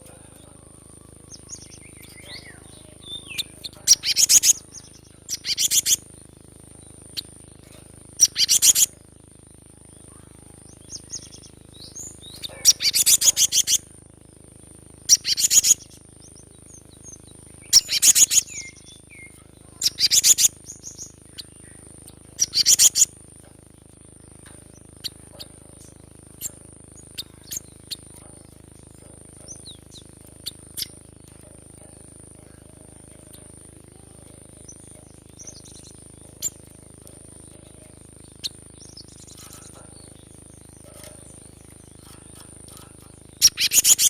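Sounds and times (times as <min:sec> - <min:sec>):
bird chattering calls: 0:00.0 - 0:06.2, 0:07.0 - 0:09.0, 0:10.0 - 0:14.0, 0:15.0 - 0:16.0, 0:17.6 - 0:23.2, 0:24.4 - 0:44.0
faint high whine: 0:00.0 - 0:44.0
bird sharp chips: 0:01.4 - 0:06.0, 0:24.4 - 0:44.0.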